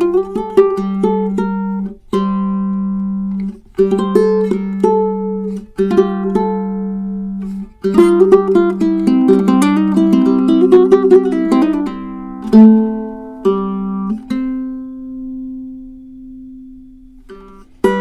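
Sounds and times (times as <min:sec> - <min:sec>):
ukulele melodic phrases: 0:00.0 - 0:18.0.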